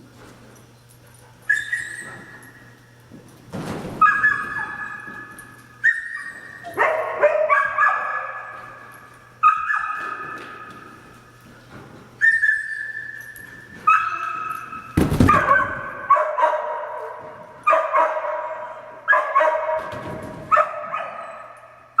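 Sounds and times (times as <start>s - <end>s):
dog barking: 6.6s - 8.8s, 9.4s - 10.3s, 15.3s - 19.9s, 20.5s - 21.6s.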